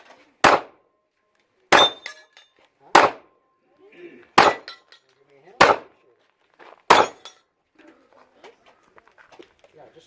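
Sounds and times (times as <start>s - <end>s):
pistol shots: 0.4s - 0.8s, 1.7s - 2.2s, 2.9s - 3.3s, 4.4s - 4.8s, 5.6s - 5.9s, 6.9s - 7.3s.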